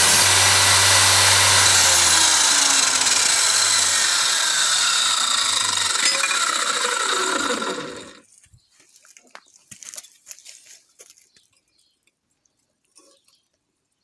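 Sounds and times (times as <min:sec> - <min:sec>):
cut-off saw winding down: 0:00.0 - 0:08.2.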